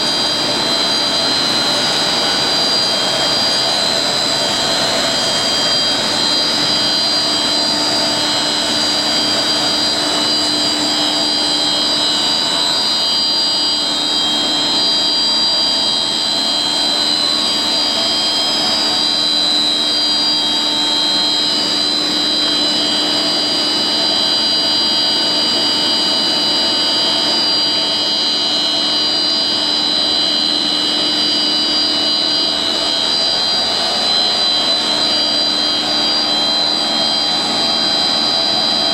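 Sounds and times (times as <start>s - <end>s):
extrusion machine running: 0.0s - 25.6s
high whining tones: 0.0s - 38.9s.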